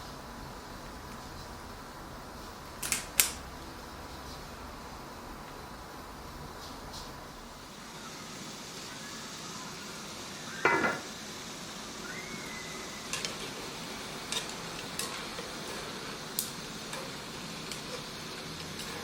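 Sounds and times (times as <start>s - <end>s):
food sizzling in a pan: 0.0s - 19.0s
metal utensil clanking on pan: 10.6s - 11.1s.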